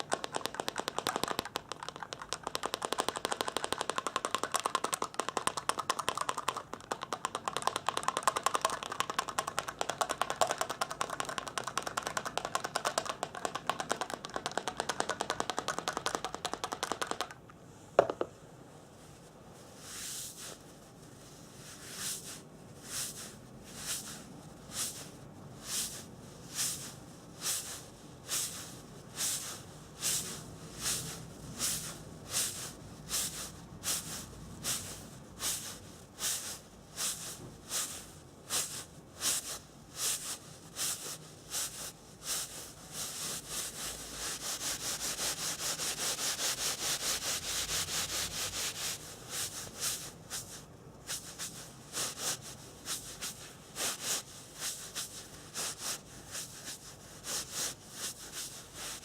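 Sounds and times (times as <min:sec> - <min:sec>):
scratchy rubbing strokes: 0:39.3 - 0:59.0.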